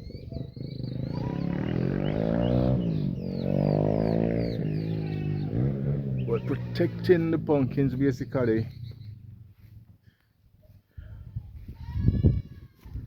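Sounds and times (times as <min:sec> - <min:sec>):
long low animal calls: 0:00.3 - 0:07.2.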